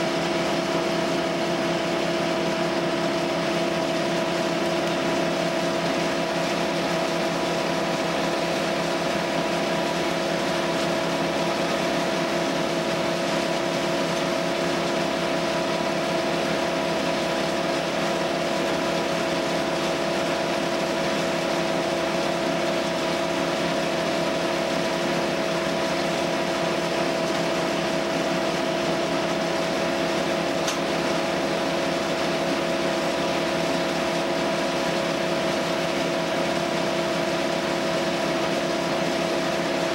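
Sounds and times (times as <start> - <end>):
wood chipper engine droning: 0.0 - 39.9.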